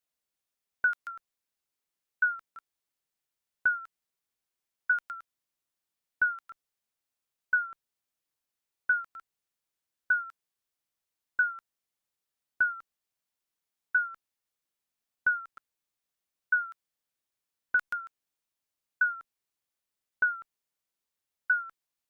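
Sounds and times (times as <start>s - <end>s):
digital timer beeps: 0.8s - 1.2s, 2.2s - 2.6s, 3.6s - 3.9s, 4.9s - 5.3s, 6.2s - 6.6s, 7.5s - 7.8s, 8.9s - 9.2s, 10.1s - 10.4s, 12.6s - 12.9s, 15.3s - 15.6s, 17.8s - 18.1s.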